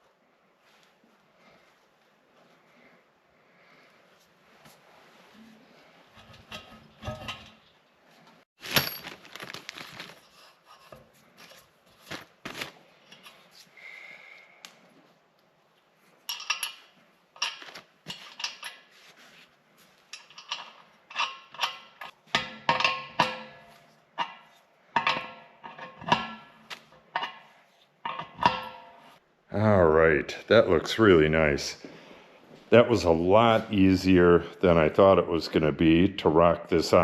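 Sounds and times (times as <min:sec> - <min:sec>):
metallic clinks of bolts and tools: 0:16.3 - 0:18.8, 0:20.2 - 0:23.6.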